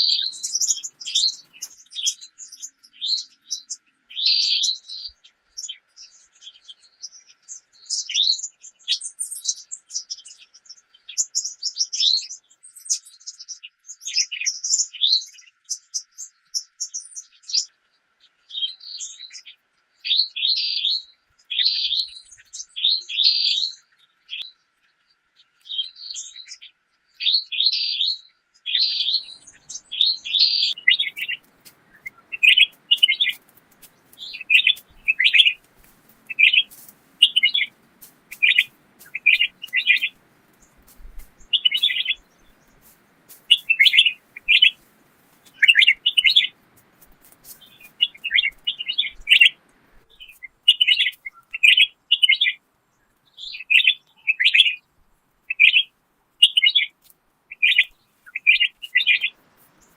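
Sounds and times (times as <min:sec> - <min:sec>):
small songbirds chirping: 0:00.0 - 0:59.9
faint low hiss: 0:28.9 - 0:59.9
light ticks: 0:30.7 - 0:49.8.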